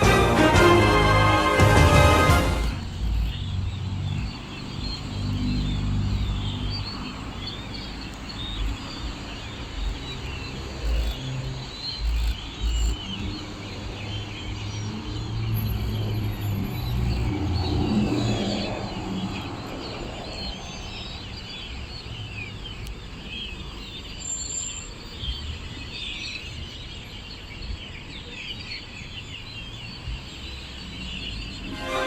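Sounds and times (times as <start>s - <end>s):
low traffic rumble: 0.0s - 23.8s
small birds chirping: 2.2s - 32.0s.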